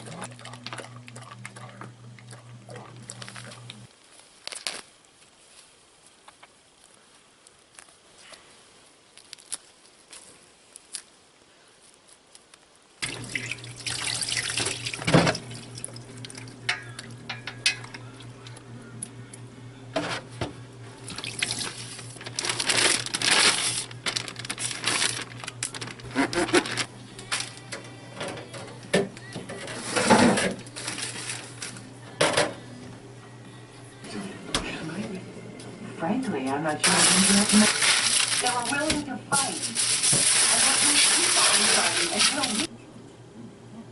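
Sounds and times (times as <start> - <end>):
water running at a sink: 13.0 - 17.4, 21.0 - 22.2, 36.9 - 42.7
steady low hum: 13.0 - 39.8.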